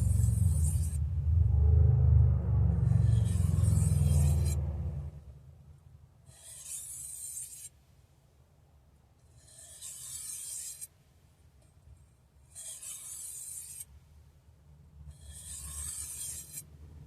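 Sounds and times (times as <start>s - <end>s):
knife drawn across sharpening surface: 0.0s - 1.0s, 3.0s - 4.6s, 6.3s - 7.8s, 9.3s - 10.9s, 12.5s - 13.9s, 15.1s - 16.7s.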